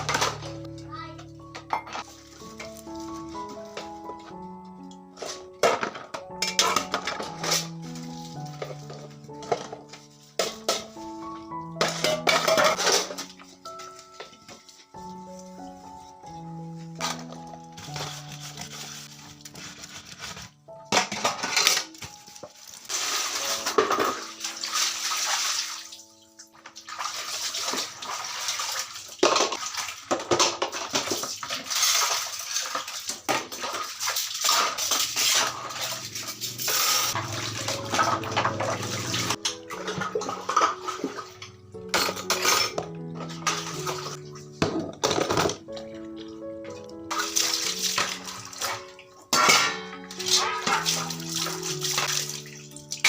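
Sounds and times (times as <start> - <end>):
soft background music: 0.0 - 53.0
dishes clinking: 1.6 - 2.1, 5.6 - 7.6, 11.8 - 13.4, 36.7 - 45.6, 49.3 - 50.9
running water splashing: 21.6 - 53.0.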